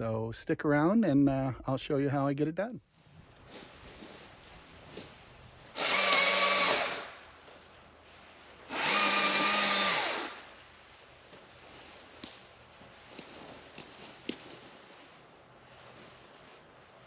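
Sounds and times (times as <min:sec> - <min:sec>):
battery chainsaw whining: 0:05.7 - 0:07.2, 0:08.7 - 0:10.5.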